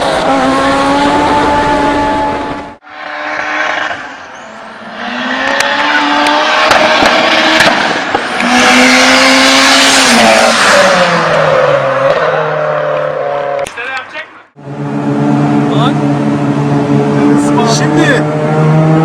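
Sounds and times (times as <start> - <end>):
car engine revving hard: 0.0 - 4.1, 4.8 - 13.4, 14.6 - 19.0.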